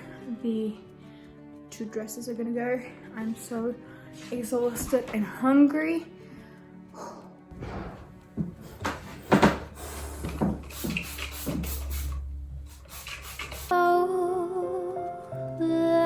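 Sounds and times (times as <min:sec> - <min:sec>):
soft music: 0:00.0 - 0:16.0
furniture knocking and clattering: 0:07.5 - 0:11.7
low hum: 0:11.8 - 0:12.9.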